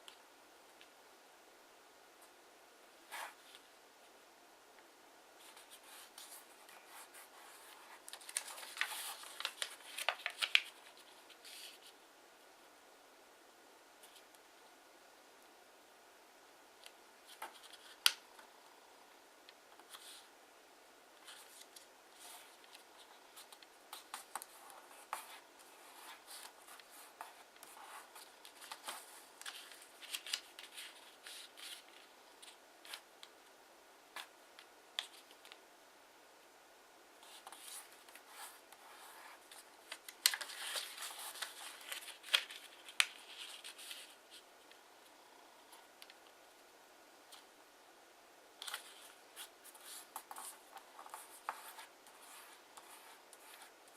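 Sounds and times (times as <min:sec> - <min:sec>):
paper folding and crinkling: 0:05.4 - 0:12.0, 0:21.2 - 0:33.2, 0:37.2 - 0:44.8, 0:48.6 - 0:53.9.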